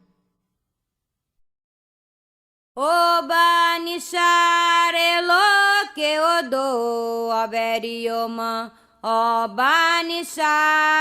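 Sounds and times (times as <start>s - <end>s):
person singing unaccompanied: 2.8s - 11.0s.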